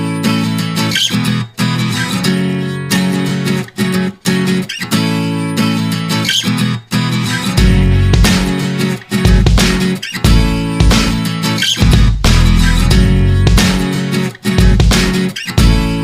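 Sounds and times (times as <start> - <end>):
strummed guitar chords: 0.0 - 16.0
bass line: 7.6 - 8.6, 9.3 - 11.2, 11.8 - 13.9, 14.6 - 16.0.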